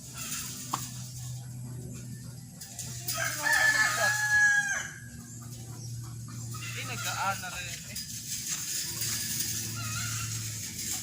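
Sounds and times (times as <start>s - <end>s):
steady low hum: 0.0s - 11.0s
rooster crowing: 3.0s - 5.2s.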